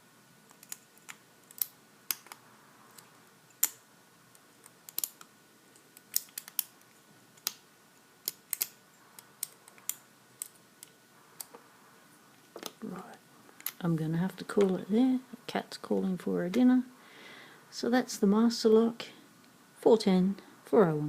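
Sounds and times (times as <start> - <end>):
lock picks clicking in padlock: 4.6 - 5.3, 6.0 - 6.7, 8.2 - 8.8.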